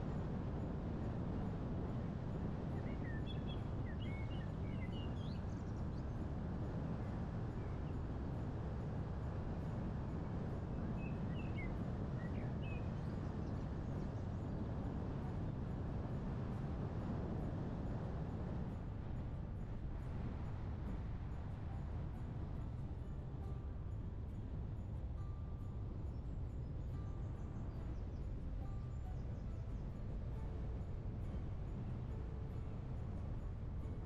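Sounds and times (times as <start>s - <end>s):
wind and driving rumble: 0.0s - 34.0s.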